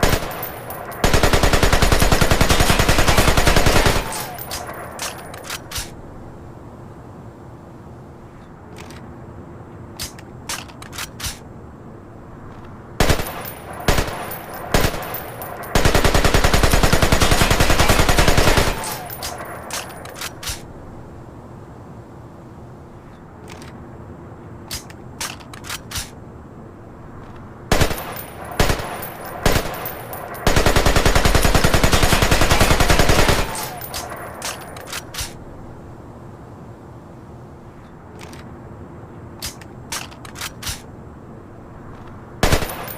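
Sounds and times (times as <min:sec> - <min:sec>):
rifle gunfire: 0:00.0 - 0:05.4, 0:13.0 - 0:20.0, 0:27.7 - 0:34.8, 0:42.4 - 0:42.9.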